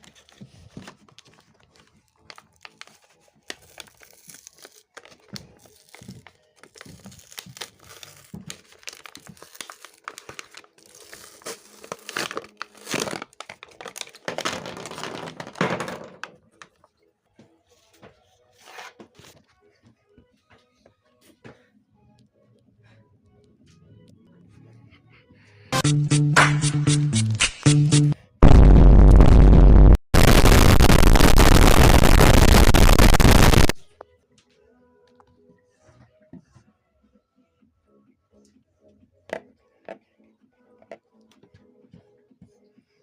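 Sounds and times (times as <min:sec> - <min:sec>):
packaging tearing and crinkling: 0:02.2 - 0:15.9.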